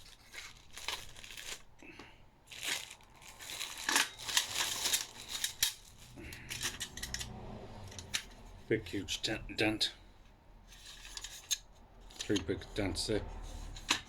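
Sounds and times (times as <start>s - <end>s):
packaging crinkling and tearing: 0.0s - 7.2s.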